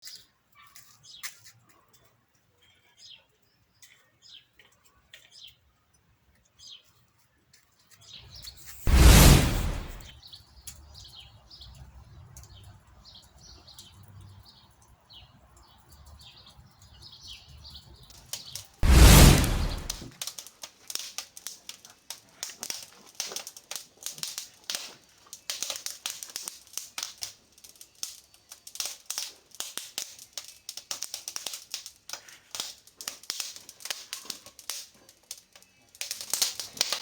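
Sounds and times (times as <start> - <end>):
wood fire crackling: 8.7 - 10.1, 18.8 - 20.1
loud low thump: 8.9 - 10.1, 18.8 - 20.0.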